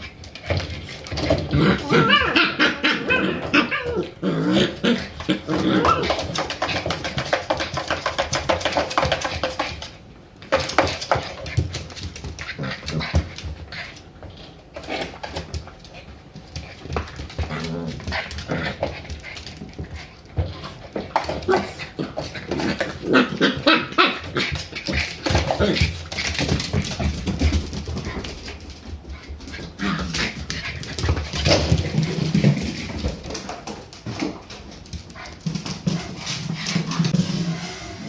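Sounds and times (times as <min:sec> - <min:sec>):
puppies barking and yipping: 0:01.8 - 0:04.2.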